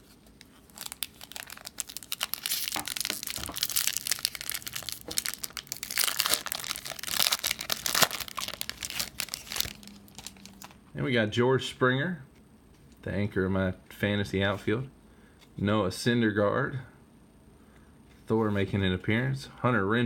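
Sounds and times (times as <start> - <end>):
plastic wrapper crinkling and tearing: 0.0 - 10.8.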